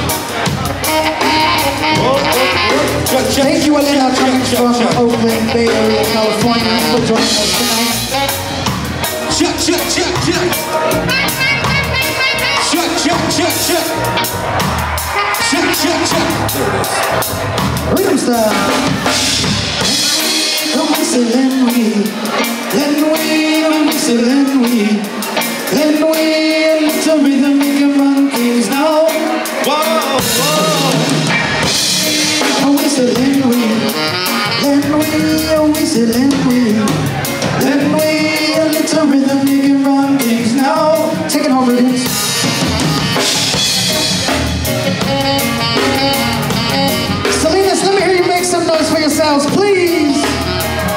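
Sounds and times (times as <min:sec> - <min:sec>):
person singing: 0:00.0 - 0:14.1, 0:17.8 - 0:44.2, 0:45.0 - 0:50.9
drum kit: 0:00.0 - 0:50.9
live band playing upbeat song: 0:00.0 - 0:50.9.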